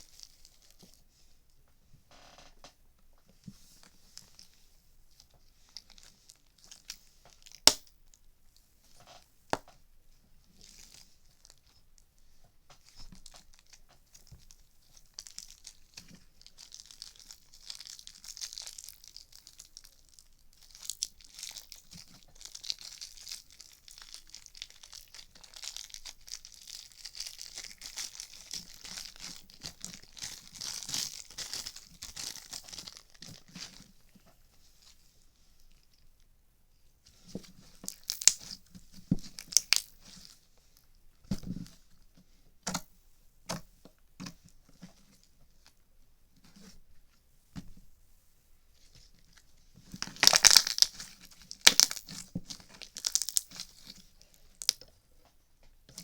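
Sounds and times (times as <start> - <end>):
crinkly rustling and crackling: 0.0 - 36.3, 36.9 - 42.9, 43.6 - 48.0, 48.6 - 56.0
sharp pops and clicks: 7.6 - 8.0.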